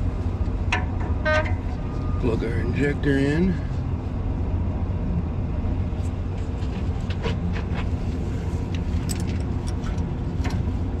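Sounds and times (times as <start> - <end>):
low machine drone: 0.0 - 11.0
small clicks of parts handled: 8.7 - 10.7.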